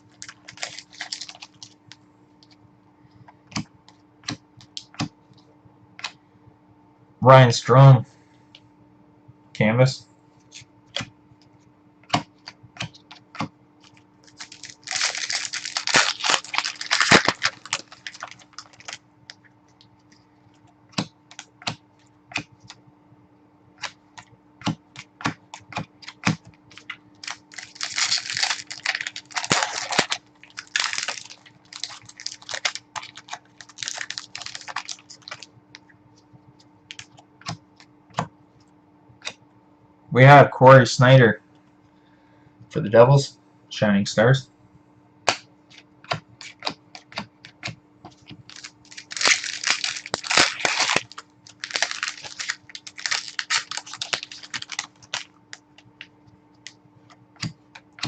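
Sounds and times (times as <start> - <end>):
foil wrappers crinkling and tearing: 0.0 - 1.8, 13.8 - 19.0, 25.5 - 35.5, 48.4 - 56.0
faint electrical hum: 0.0 - 58.0
cards clicking and tapping: 23.8 - 27.0, 57.4 - 58.0.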